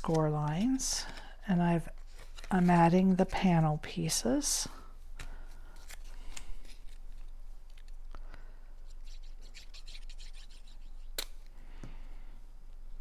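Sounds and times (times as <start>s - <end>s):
paper scratching and rustling: 8.9s - 11.0s.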